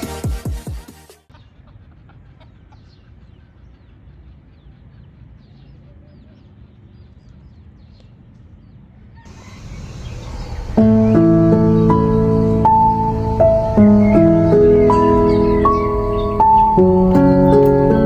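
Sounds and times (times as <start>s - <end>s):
music: 0.0s - 1.3s, 10.6s - 18.0s
birds chirping: 2.5s - 18.0s
low background rumble: 9.3s - 18.0s.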